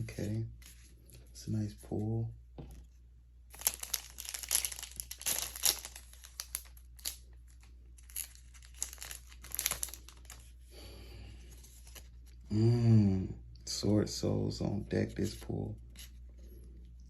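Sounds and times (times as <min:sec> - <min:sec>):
foil wrapper crinkling: 0:03.5 - 0:10.6.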